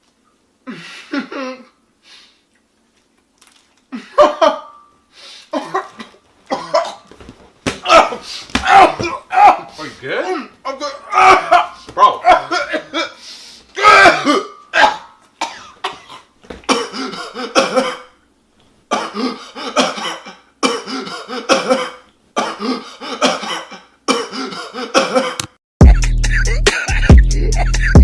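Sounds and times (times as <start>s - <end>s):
person coughing: 0.7s - 1.7s, 3.9s - 4.7s, 5.5s - 7.1s, 11.4s - 13.2s, 13.8s - 18.1s, 18.9s - 25.5s
hip-hop beat with heavy bass: 25.8s - 28.0s.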